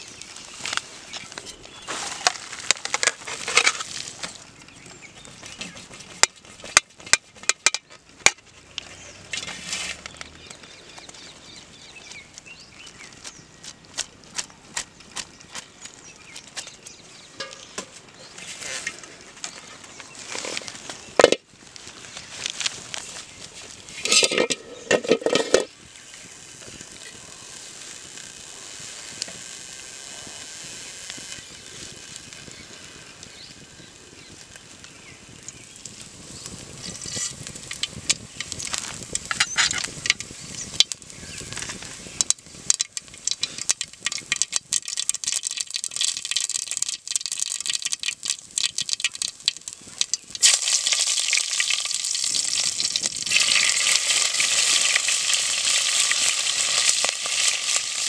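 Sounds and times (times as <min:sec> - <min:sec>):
food sizzling in a pan: 0:25.5 - 0:58.0
stirring clicks: 0:42.2 - 0:58.0.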